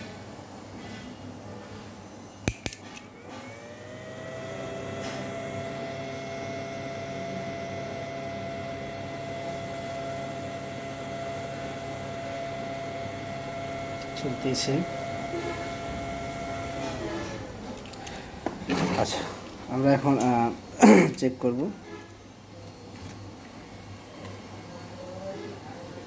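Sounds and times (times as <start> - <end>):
cooling fan whirring: 2.2 - 26.0
switch click: 2.5 - 3.0.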